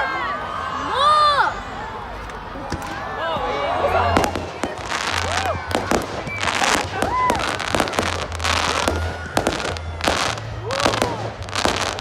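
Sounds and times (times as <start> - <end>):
fireworks bangs and crackling: 2.6 - 12.0
fireworks whistling: 4.0 - 12.0.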